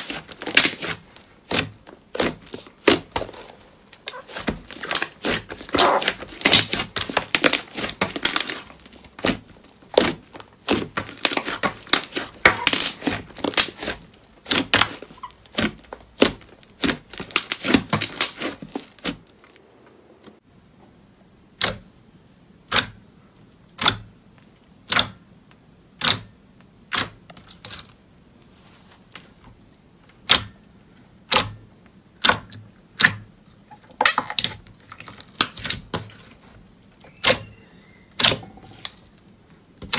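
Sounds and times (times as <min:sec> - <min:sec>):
slime crackling and crunching: 0:00.0 - 0:19.7, 0:33.7 - 0:39.9.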